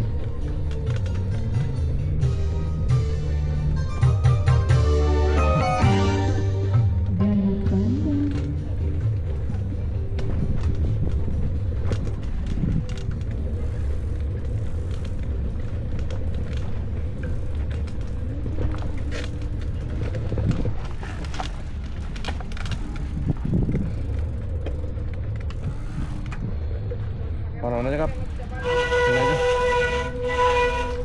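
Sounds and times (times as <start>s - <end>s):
light clicks and rattles: 0.0s - 2.1s, 8.3s - 27.1s
bicycle riding rumble: 0.0s - 31.0s.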